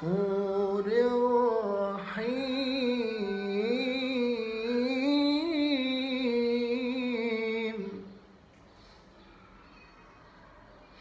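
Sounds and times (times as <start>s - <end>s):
person chanting melodic recitation: 0.0s - 8.2s.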